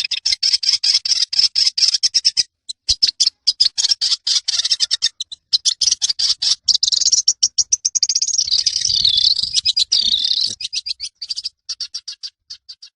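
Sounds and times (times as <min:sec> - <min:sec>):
bird song chattering and warbling: 0:00.0 - 0:12.9.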